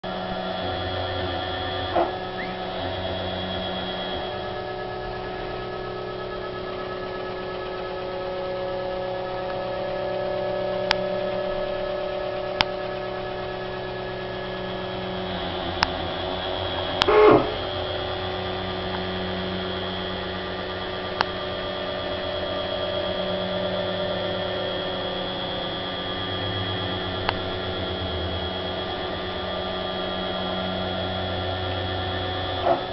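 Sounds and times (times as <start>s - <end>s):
machine axis drive whining: 0.0s - 32.9s.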